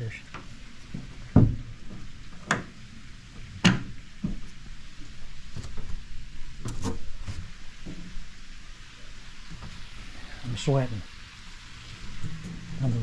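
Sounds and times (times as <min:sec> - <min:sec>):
knocks of deck lids and fittings: 0:00.3 - 0:04.6.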